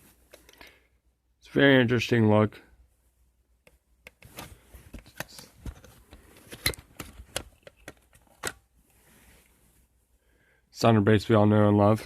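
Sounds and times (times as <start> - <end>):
plastic clicks and knocks: 3.6 - 8.6.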